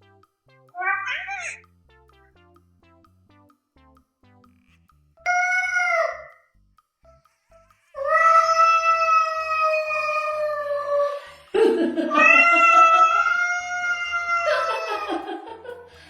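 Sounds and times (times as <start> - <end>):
cat yowling: 0.8 - 1.6, 8.0 - 11.2, 12.1 - 15.2.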